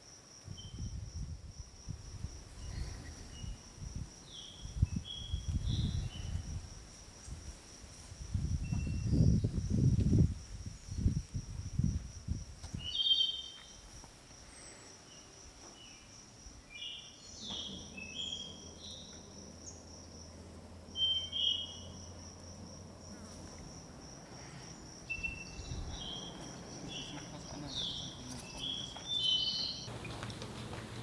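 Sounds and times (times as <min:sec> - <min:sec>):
insect trill: 0:00.0 - 0:30.2
birds chirping: 0:24.6 - 0:31.0.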